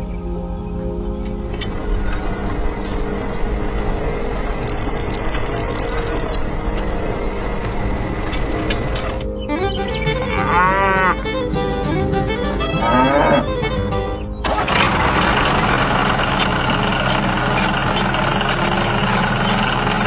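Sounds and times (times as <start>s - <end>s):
dense steady noise: 0.0s - 9.4s
background music: 0.0s - 20.0s.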